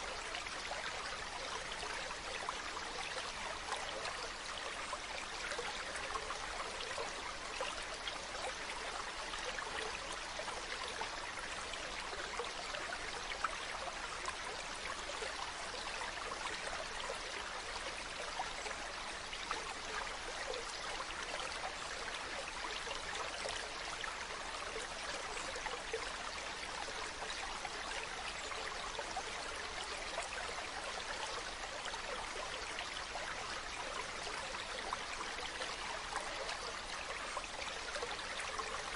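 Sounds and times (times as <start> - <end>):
stream running over rocks: 0.0 - 38.9.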